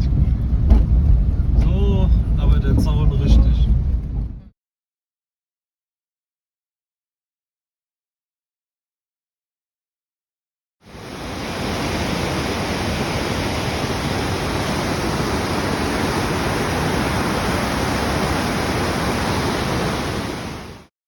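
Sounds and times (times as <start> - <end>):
waterfall roaring: 10.9 - 20.9.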